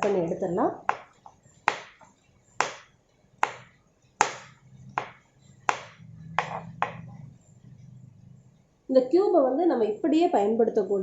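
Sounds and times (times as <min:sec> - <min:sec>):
knife chopping on cutting board: 0:00.8 - 0:07.0.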